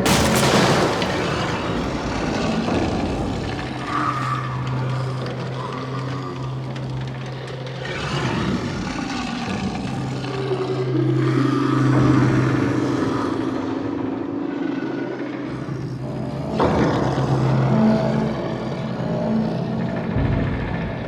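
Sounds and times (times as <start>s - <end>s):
low drone: 0.0s - 21.0s.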